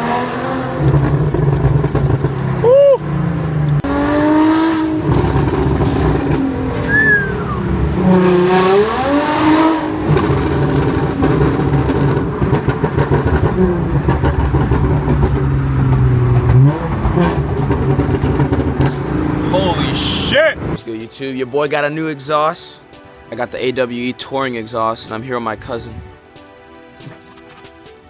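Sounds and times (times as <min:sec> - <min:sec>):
car engine revving: 0:00.0 - 0:28.0.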